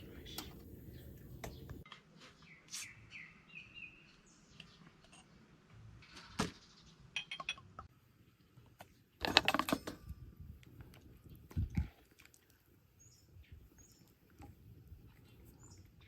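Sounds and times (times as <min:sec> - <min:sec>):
short bird chirps: 0:02.4 - 0:04.7.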